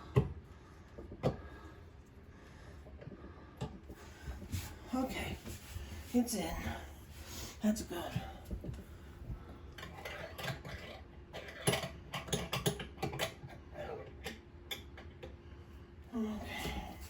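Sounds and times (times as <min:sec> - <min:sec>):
sink drain parts clicking and rattling: 0:09.8 - 0:13.6.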